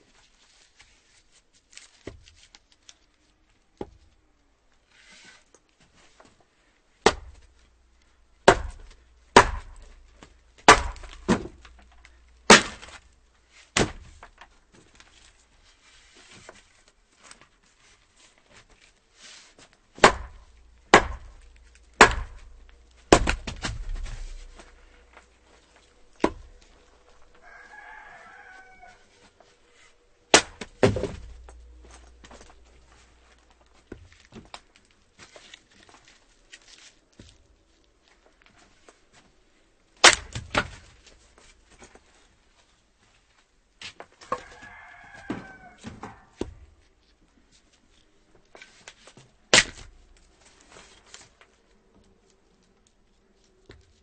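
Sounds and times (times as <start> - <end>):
axe chopping wood: 7.0 - 7.5, 8.4 - 13.0, 13.7 - 14.4, 20.0 - 25.2, 26.2 - 26.6, 30.3 - 32.5, 40.0 - 40.8, 49.5 - 50.0
rooster crowing: 26.6 - 29.4, 44.3 - 46.4.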